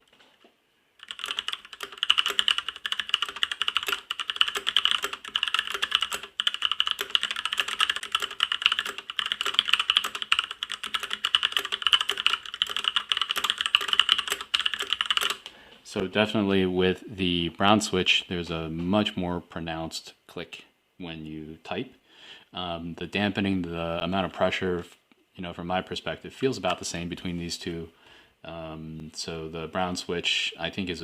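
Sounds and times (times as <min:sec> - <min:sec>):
mechanical keyboard typing: 0:01.0 - 0:15.4.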